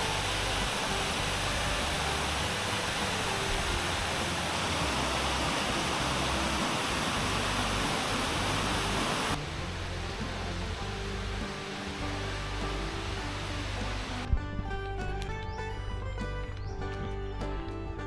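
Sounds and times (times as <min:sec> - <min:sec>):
waterfall rushing: 0:00.0 - 0:14.3.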